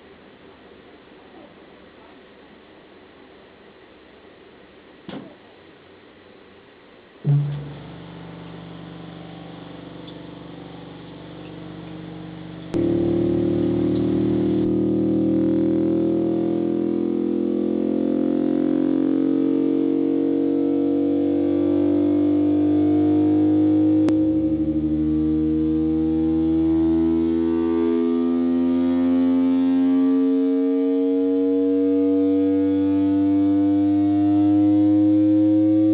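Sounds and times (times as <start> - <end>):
distorted electronic bass tones: 7.2 - 31.0.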